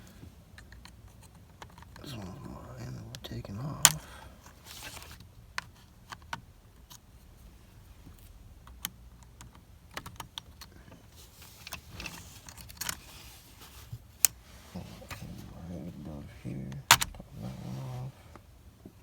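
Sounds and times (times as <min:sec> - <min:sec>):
rustling: 0:10.7 - 0:18.5.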